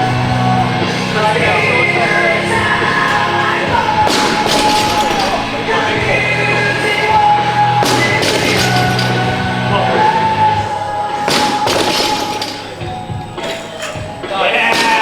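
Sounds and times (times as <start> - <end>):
background music: 0.0 - 15.0
sharp hits: 4.0 - 6.2, 7.8 - 9.4, 11.3 - 13.0.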